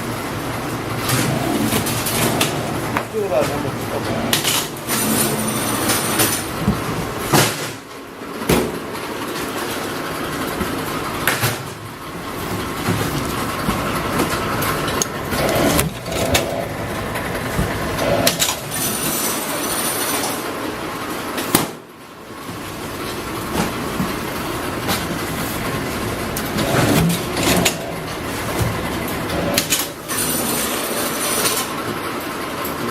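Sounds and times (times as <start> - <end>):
strapping machine motor whirring: 14.1 - 19.1.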